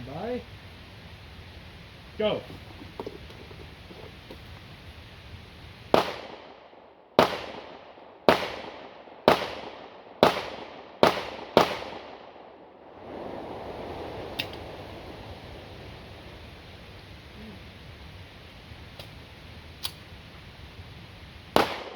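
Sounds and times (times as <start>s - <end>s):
pistol shots with echo: 5.9s - 12.6s, 21.6s - 21.9s.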